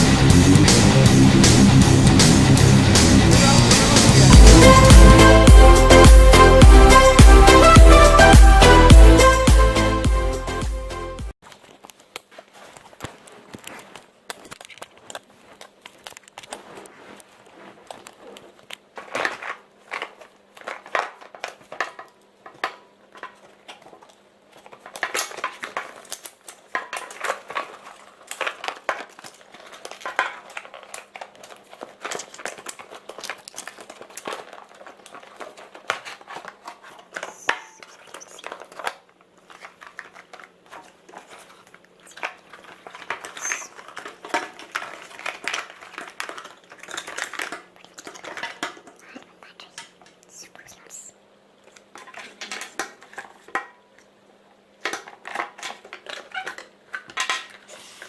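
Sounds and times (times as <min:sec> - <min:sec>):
crinkling plastic packaging: 0:11.4 - 0:54.2, 0:54.8 - 0:58.0.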